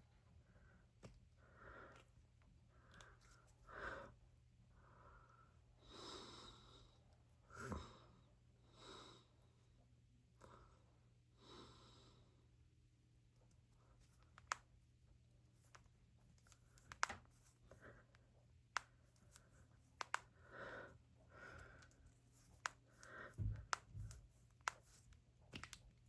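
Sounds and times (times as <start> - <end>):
knuckles cracking: 14.2 - 14.7, 15.6 - 17.8, 18.7 - 20.4, 21.5 - 26.0
soft breaths: 15.6 - 25.2.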